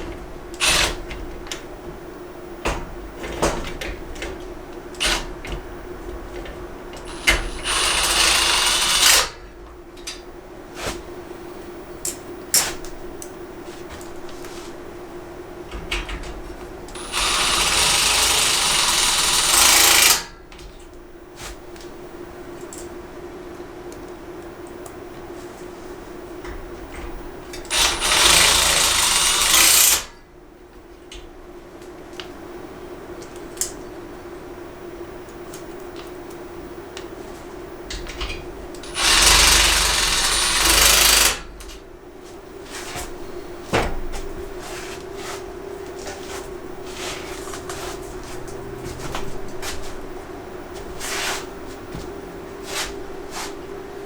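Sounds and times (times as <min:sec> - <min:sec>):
power drill running: 0:00.5 - 0:01.0, 0:07.0 - 0:09.4, 0:17.0 - 0:20.4, 0:27.7 - 0:30.1, 0:38.8 - 0:41.6.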